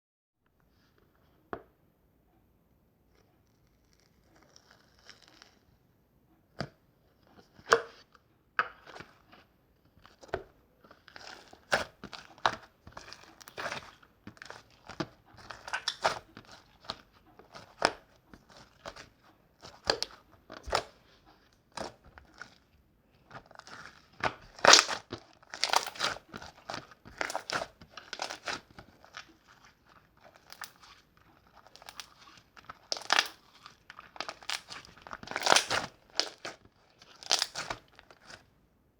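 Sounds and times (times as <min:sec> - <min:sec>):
slime squeezed by hand crackling: 0:24.5 - 0:29.2, 0:31.6 - 0:36.5, 0:37.1 - 0:38.4.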